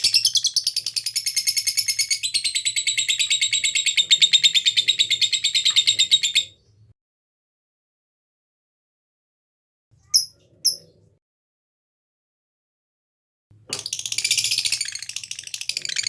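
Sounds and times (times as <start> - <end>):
lovebird chattering trill: 10.1 - 10.9.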